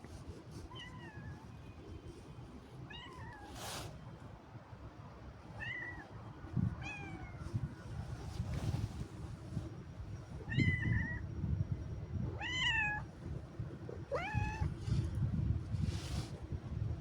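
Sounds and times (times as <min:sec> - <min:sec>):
cat meowing: 0:12.4 - 0:13.0, 0:14.1 - 0:14.8.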